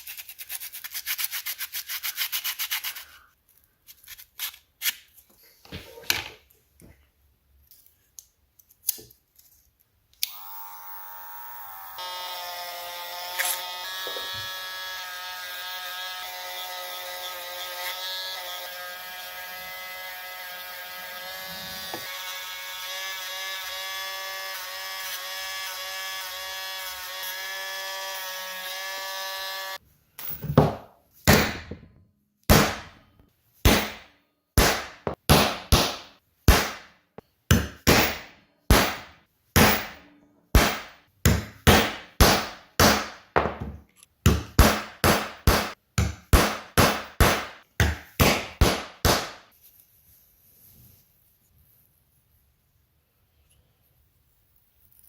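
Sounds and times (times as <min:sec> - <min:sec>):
power tool motor whining: 0:10.2 - 0:16.3.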